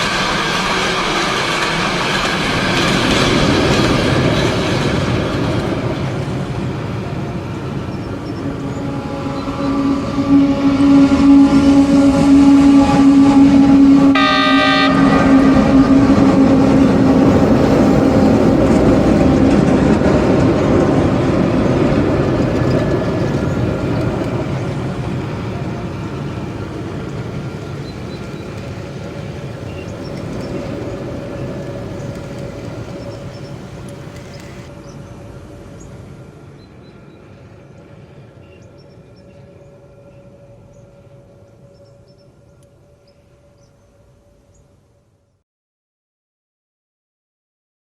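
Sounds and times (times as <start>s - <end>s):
rolling rumble: 0.0s - 36.0s
model train humming: 0.0s - 44.6s
train horn blast: 6.5s - 35.6s.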